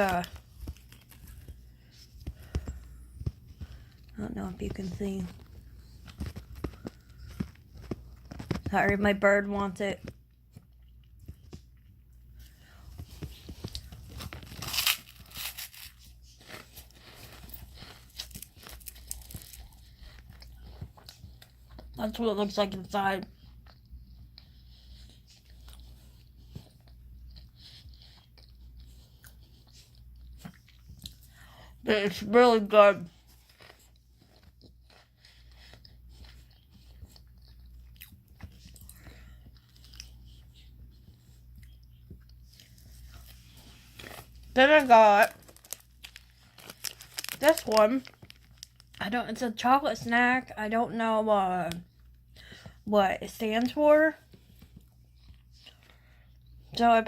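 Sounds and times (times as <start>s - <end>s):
plastic wrapper crinkling and tearing: 0.0s - 1.5s, 13.0s - 20.4s, 43.1s - 49.1s
chewing crunchy snack: 0.0s - 4.2s, 10.0s - 31.8s, 33.0s - 49.0s.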